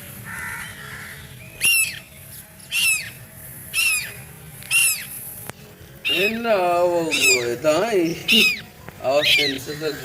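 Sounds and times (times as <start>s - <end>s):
duckling distress peeps: 1.6s - 2.1s, 2.7s - 5.2s, 6.0s - 9.7s.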